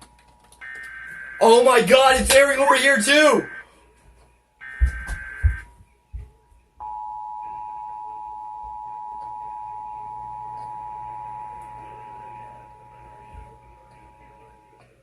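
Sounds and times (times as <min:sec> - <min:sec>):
two-tone alarm signal: 0:03.1 - 0:03.7, 0:04.6 - 0:05.7, 0:06.8 - 0:14.6.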